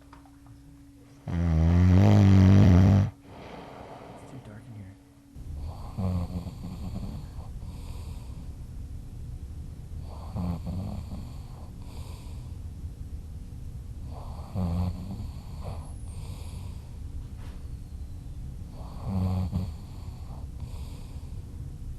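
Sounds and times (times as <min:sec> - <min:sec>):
person snoring: 0:01.3 - 0:04.9
soft breathing: 0:03.1 - 0:08.6, 0:19.8 - 0:21.6.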